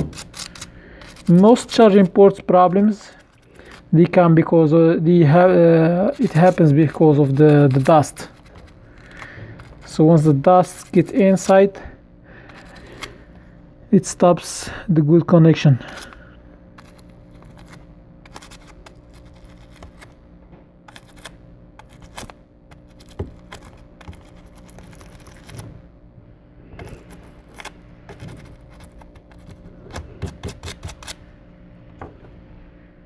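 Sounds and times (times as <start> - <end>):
scratchy scrapes and light clicks: 0.0 - 3.9, 6.1 - 11.6, 16.8 - 20.2, 20.9 - 25.8, 26.8 - 31.2.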